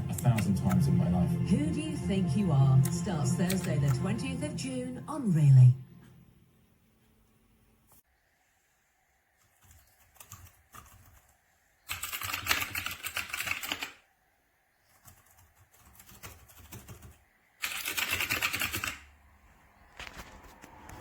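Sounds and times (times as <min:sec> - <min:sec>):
fast typing on clicky keyboard: 0:09.5 - 0:14.0, 0:14.9 - 0:19.1.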